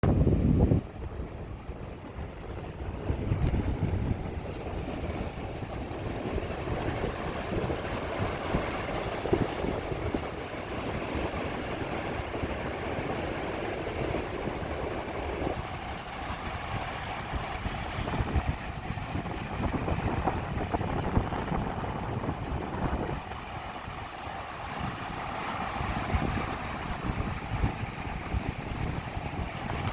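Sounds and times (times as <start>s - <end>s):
surf washing on beach: 0.0s - 29.9s
wind buffeting microphone: 0.0s - 29.9s.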